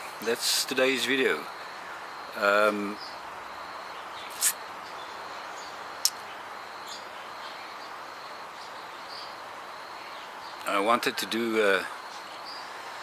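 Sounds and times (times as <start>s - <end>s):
faint steady hiss: 0.0s - 13.0s
bird chirps: 3.8s - 11.2s.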